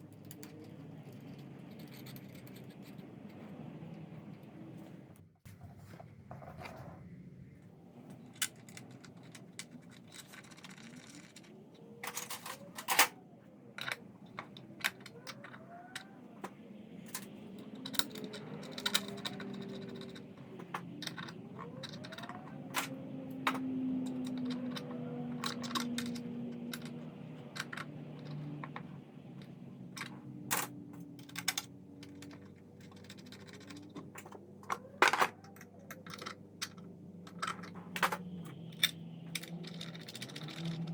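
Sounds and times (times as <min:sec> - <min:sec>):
hand tools clicking on metal: 0:13.8 - 0:40.9.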